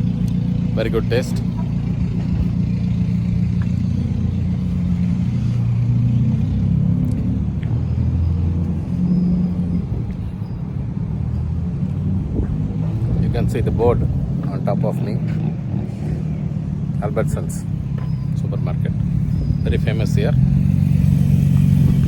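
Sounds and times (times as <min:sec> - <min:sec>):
vehicle engine rumbling: 0:00.0 - 0:22.0.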